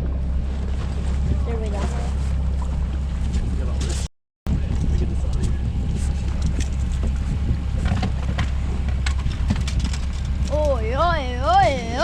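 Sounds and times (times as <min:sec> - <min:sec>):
boat motor running: 0:00.0 - 0:12.0
wind noise on microphone: 0:03.2 - 0:12.0.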